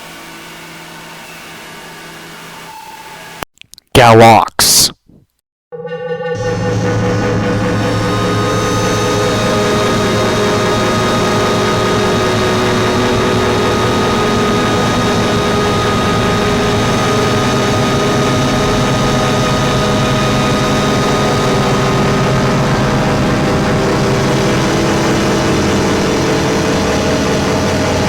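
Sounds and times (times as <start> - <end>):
dense rumbling drone: 6.4 - 28.0.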